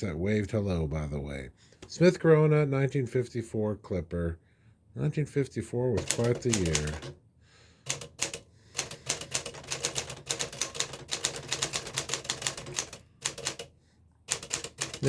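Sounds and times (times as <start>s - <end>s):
typewriter key strikes: 6.0s - 7.2s, 7.9s - 13.7s, 14.3s - 15.0s.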